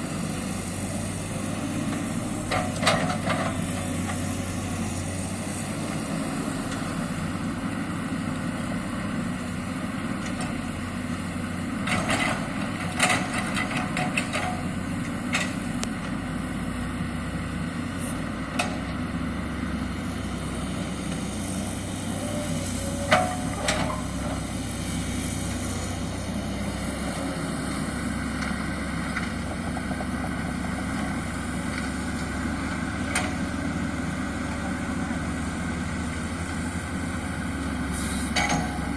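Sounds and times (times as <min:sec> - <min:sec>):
excavator diesel engine running: 0:00.0 - 0:38.9.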